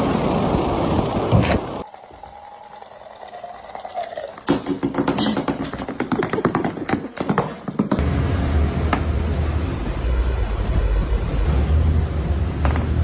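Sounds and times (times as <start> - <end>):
quick irregular taps: 4.5 - 8.0.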